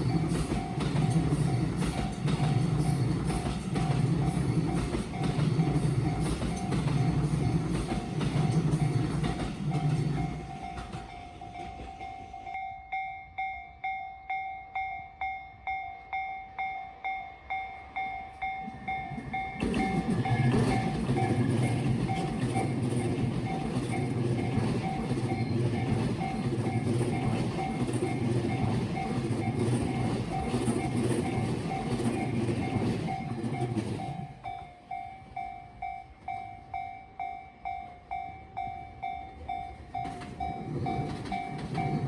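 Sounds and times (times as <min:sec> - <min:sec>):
train rumble and wheel clatter: 0:00.0 - 0:14.4, 0:16.0 - 0:42.0.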